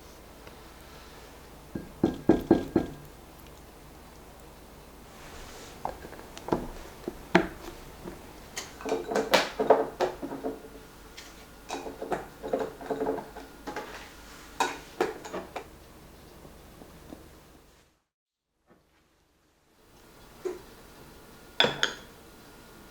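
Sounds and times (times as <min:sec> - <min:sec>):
dishes and utensils clinking: 0:08.6 - 0:10.7, 0:11.7 - 0:15.6.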